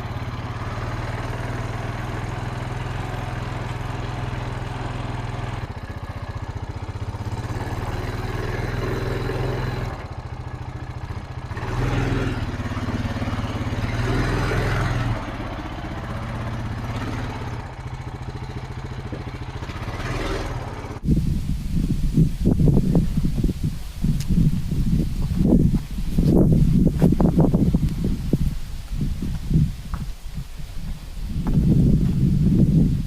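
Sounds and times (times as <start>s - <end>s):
tractor engine revving: 0.0s - 21.1s.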